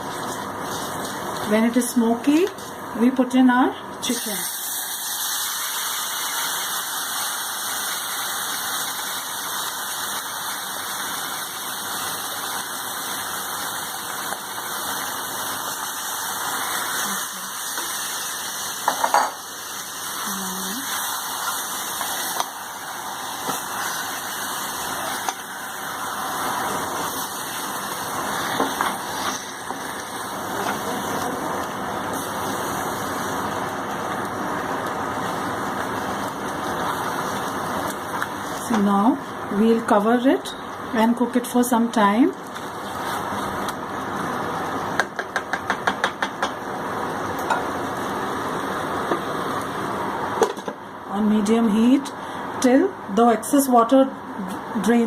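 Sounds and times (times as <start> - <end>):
chicken sizzling in oil: 4.0 - 39.0, 42.5 - 45.0
spoon knocking against pan: 45.0 - 46.6.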